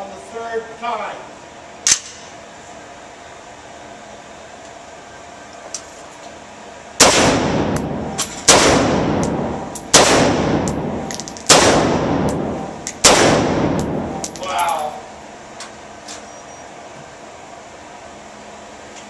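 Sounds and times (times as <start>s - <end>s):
rifle shots with echo: 7.0s - 14.4s.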